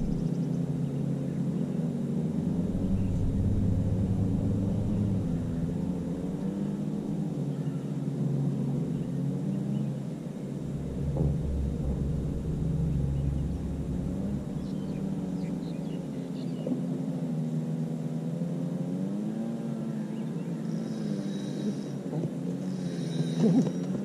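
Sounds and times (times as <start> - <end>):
low rumble: 0.0 - 9.4, 10.2 - 17.7
engine running: 0.0 - 18.0.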